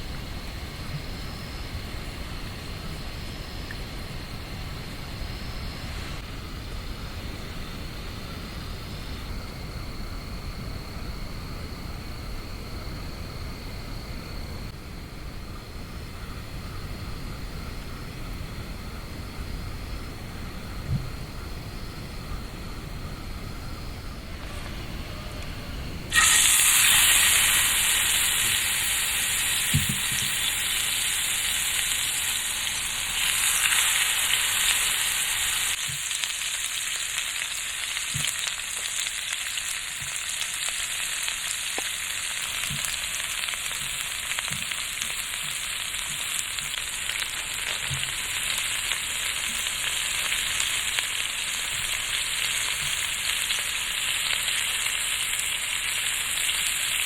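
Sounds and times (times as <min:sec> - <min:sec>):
food sizzling in a hot pan: 0:26.1 - 0:57.0.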